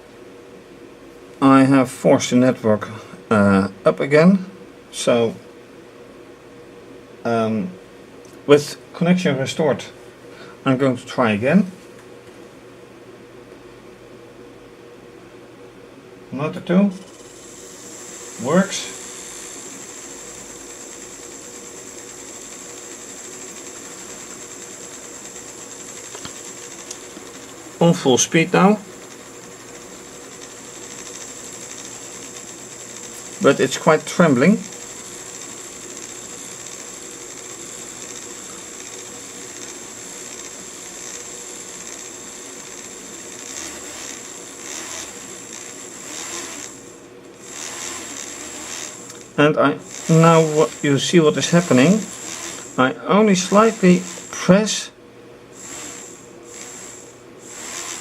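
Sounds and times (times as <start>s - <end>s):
small electric motor whirring: 17.0s - 54.8s, 55.5s - 58.0s.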